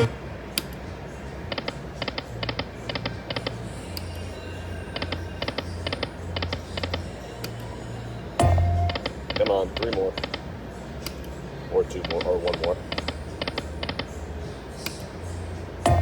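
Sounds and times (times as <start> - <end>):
slot machine reels clicking: 8.8 - 10.5.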